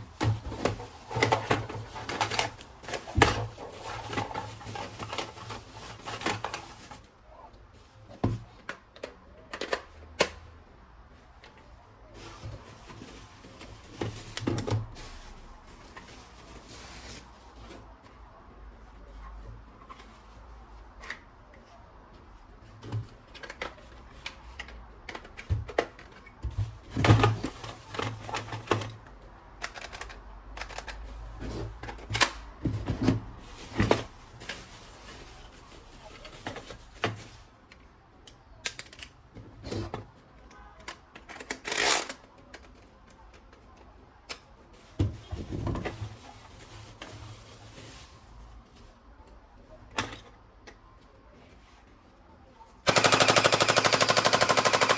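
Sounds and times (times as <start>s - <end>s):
plastic toy guns clicking and rattling: 0.2s - 6.7s, 29.6s - 31.1s, 38.2s - 39.2s, 40.8s - 42.8s, 52.8s - 54.9s.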